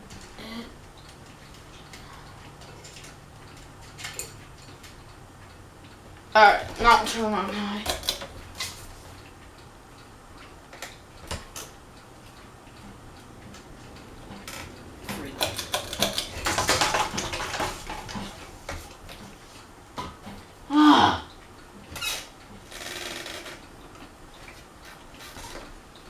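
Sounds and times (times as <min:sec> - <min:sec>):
ceiling fan running: 0:00.0 - 0:26.0.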